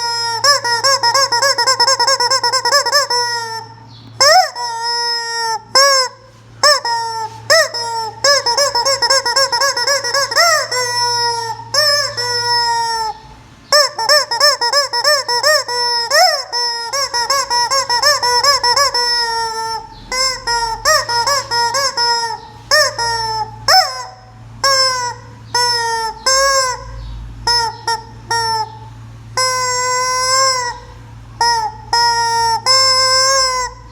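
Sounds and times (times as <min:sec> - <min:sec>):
rubber chicken toy squeaking: 0:00.0 - 0:26.9, 0:27.5 - 0:28.8, 0:29.4 - 0:33.9.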